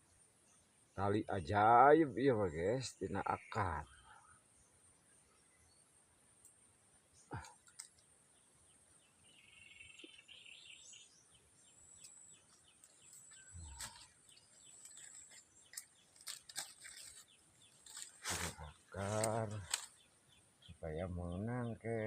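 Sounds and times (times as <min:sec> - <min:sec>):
sharp clicks: 0:19.2 - 0:20.0.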